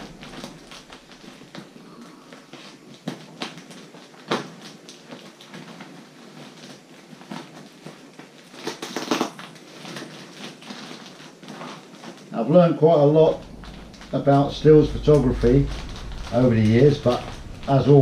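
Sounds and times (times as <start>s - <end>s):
packaging rustling and crinkling: 0.0s - 12.3s, 13.2s - 18.0s.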